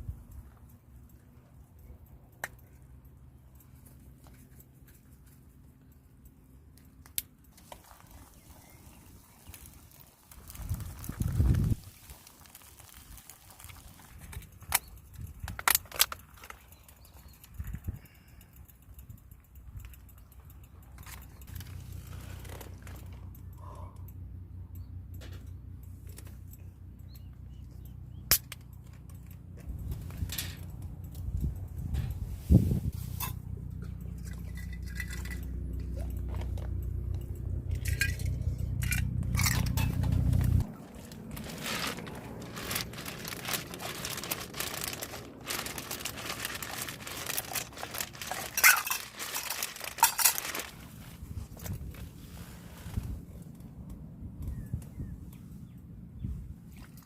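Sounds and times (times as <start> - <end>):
sharp crackles: 6.8 - 17.6, 36.4 - 53.6
crinkling and rustling: 7.1 - 17.6, 20.9 - 23.3, 31.9 - 53.7
low rumble: 29.6 - 48.6.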